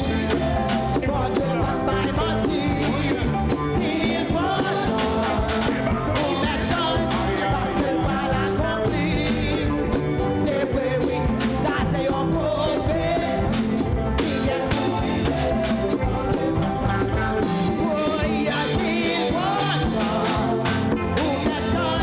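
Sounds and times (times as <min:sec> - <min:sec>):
band playing upbeat music: 0:00.0 - 0:22.0
singing: 0:00.0 - 0:22.0
steady drum beat: 0:00.0 - 0:22.0.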